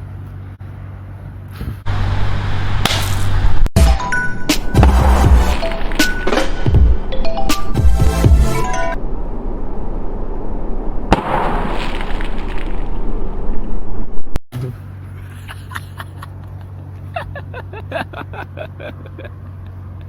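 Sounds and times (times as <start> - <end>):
rush of noise: 8.2 - 14.4
steady low hum: 8.2 - 19.6
bottle bursting with sharp crack: 11.1 - 12.8.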